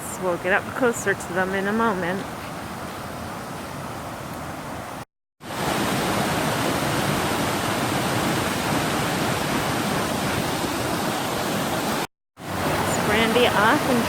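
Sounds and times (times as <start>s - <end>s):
waterfall rushing: 4.8s - 14.0s.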